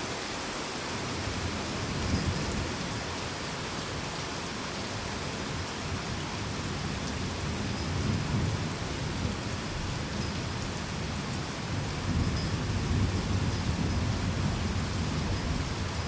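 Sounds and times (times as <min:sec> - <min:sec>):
heavy rain falling: 0:00.0 - 0:16.0
thunder rumbling: 0:06.3 - 0:16.0.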